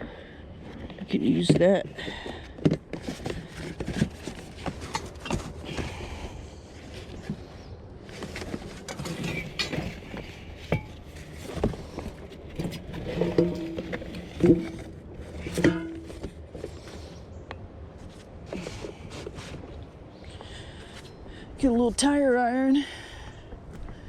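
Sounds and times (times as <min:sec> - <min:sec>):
scrap metal clanking: 0:08.2 - 0:17.2.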